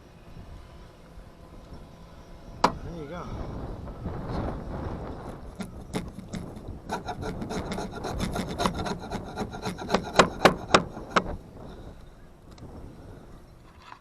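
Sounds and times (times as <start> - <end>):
hand tool scraping hard surface: 5.5 - 11.3.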